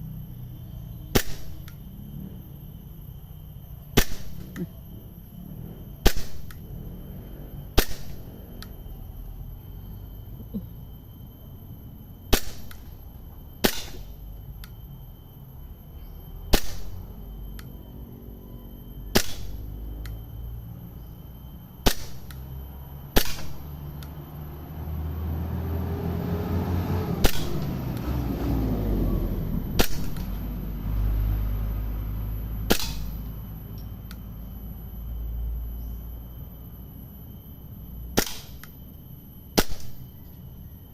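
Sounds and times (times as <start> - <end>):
airsoft gun shots: 1.1 - 1.7, 4.0 - 4.6, 6.0 - 6.6, 7.8 - 8.2, 12.3 - 12.9, 13.6 - 14.1, 16.5 - 17.0, 19.1 - 19.6, 21.8 - 22.3, 23.2 - 23.6, 27.2 - 27.7, 29.8 - 30.3, 32.7 - 33.2, 38.2 - 38.7, 39.6 - 40.0.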